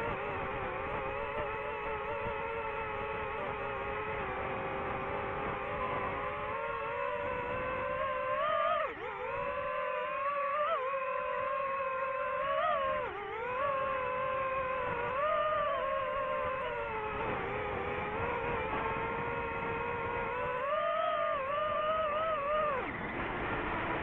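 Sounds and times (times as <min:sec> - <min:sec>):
drone propellers whining: 0:00.0 - 0:24.0.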